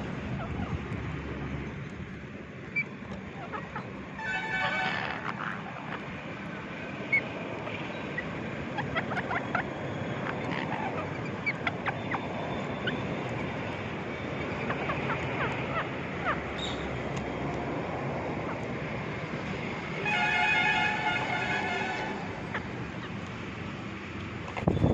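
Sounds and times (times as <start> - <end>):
steady background noise: 0.0 - 24.9
parrot chirping: 7.1 - 17.0.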